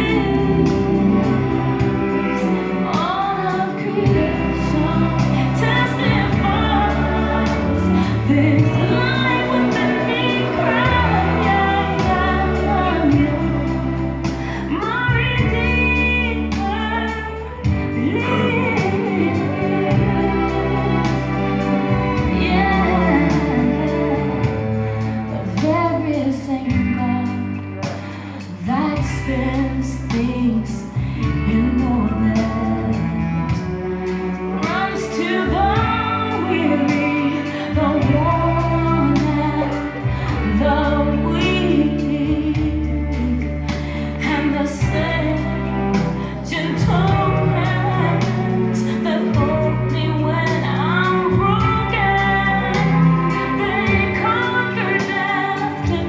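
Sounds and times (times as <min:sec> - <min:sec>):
woman singing gospel: 0:00.0 - 0:21.6, 0:22.2 - 0:24.7, 0:34.6 - 0:56.0
held bass notes: 0:00.0 - 0:56.0.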